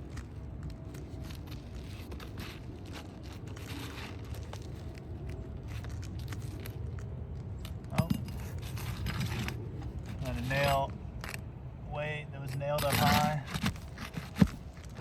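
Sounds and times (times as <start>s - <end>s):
roof shingles crackling and scraping: 0.0s - 11.5s, 12.4s - 15.0s
steady low rumble: 0.0s - 15.0s.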